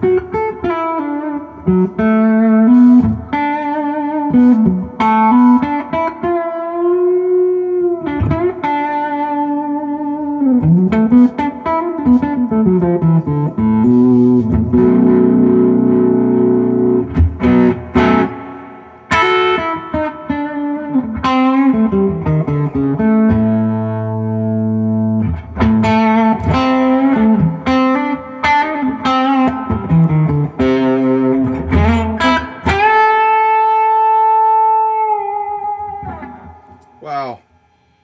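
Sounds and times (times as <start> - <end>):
electric guitar playing: 0.0 - 38.0.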